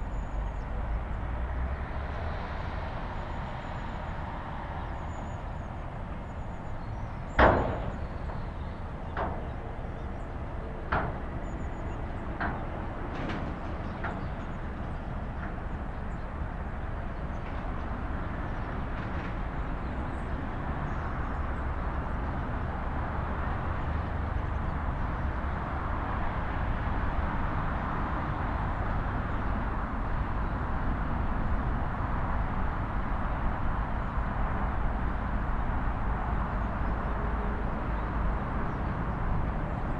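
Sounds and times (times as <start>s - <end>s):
faint knocks: 7.3s - 14.5s.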